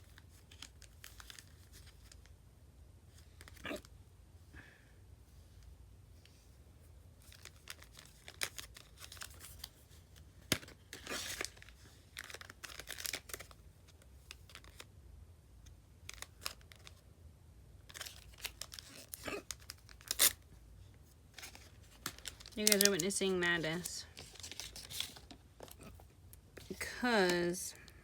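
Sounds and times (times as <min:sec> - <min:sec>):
packaging crinkling and tearing: 0:00.0 - 0:02.3, 0:03.1 - 0:03.9, 0:07.2 - 0:14.9, 0:16.0 - 0:17.0, 0:17.8 - 0:20.5, 0:21.3 - 0:28.0
rustling: 0:21.3 - 0:27.6.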